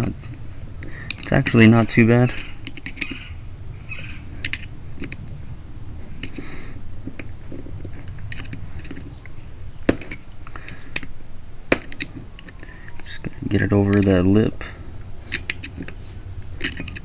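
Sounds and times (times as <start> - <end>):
sharp metallic clicks: 15.3 - 16.0
hand tool scraping metal cap: 16.6 - 17.0.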